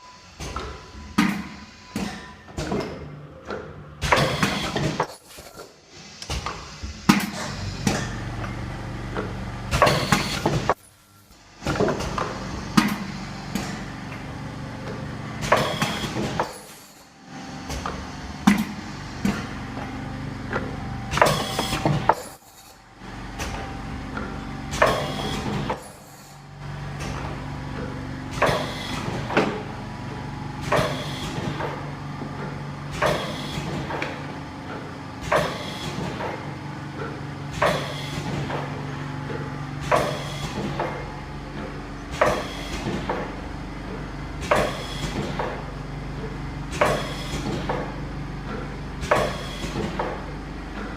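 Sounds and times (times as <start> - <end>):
machine humming: 5.8 - 50.9
machine clunk: 14.8 - 16.8, 17.6 - 19.9, 26.9 - 29.7, 30.6 - 45.8, 46.7 - 50.9.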